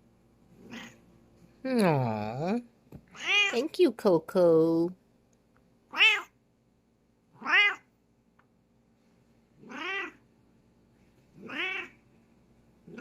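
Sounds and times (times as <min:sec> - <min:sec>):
cat meowing: 0:00.6 - 0:01.0, 0:03.2 - 0:03.6, 0:05.9 - 0:06.3, 0:07.4 - 0:07.9, 0:09.6 - 0:10.2, 0:11.4 - 0:12.0.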